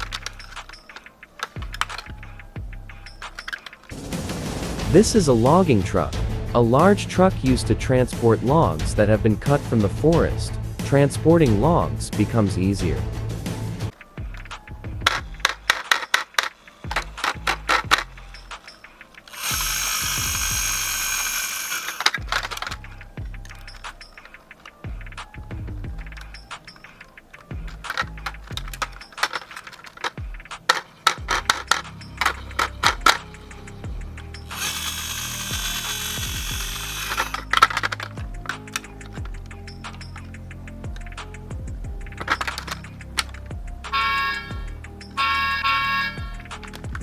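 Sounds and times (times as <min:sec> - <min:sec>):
toy mechanism clicking: 0:00.0 - 0:02.2, 0:03.0 - 0:03.9, 0:13.9 - 0:25.3, 0:26.0 - 0:41.4, 0:42.0 - 0:47.0
background music: 0:00.0 - 0:47.0
high whirring rattle: 0:15.1 - 0:47.0.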